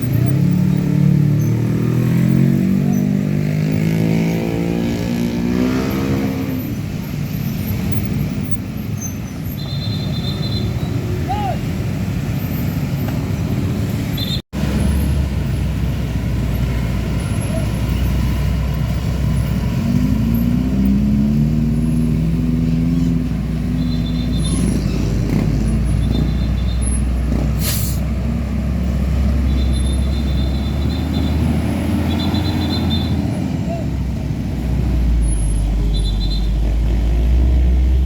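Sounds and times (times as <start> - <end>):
diesel truck traffic: 0.0 - 38.0
brief air hiss: 27.6 - 28.1.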